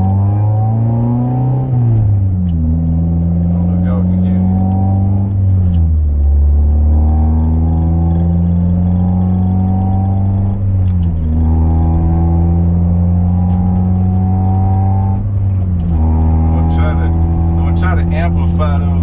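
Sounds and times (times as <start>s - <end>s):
car engine running at raised revs: 0.0s - 19.0s.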